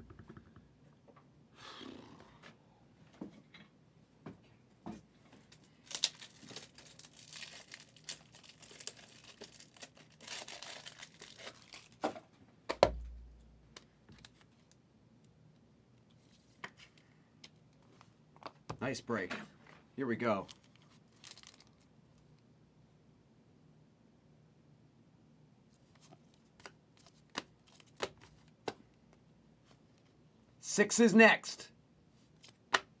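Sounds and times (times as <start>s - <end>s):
wrappers tearing and crinkling: 5.7s - 12.0s, 20.5s - 21.9s.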